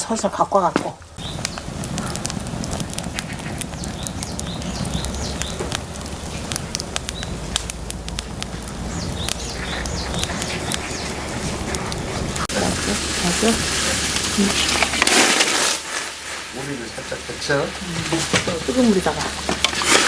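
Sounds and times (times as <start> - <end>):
birds chirping: 0.0 - 15.2
wood fire crackling and popping: 0.0 - 20.0.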